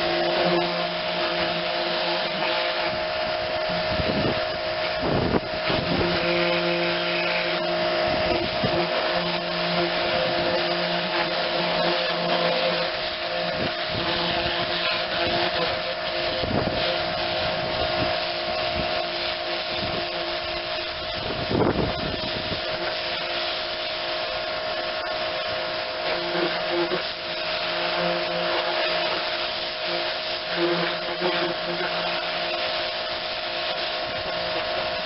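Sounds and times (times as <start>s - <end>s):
pressure washer motor humming: 0.0s - 35.0s
water spray hissing: 0.0s - 35.0s.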